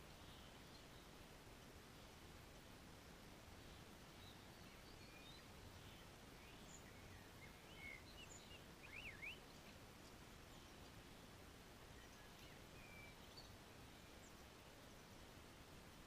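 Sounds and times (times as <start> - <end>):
low background hiss: 0.0 - 16.0
bird chirps and whistles: 7.7 - 9.4.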